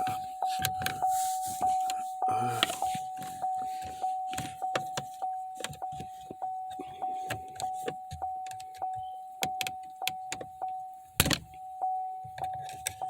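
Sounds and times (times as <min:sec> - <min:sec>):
car warning chime dinging: 0:00.0 - 0:13.0.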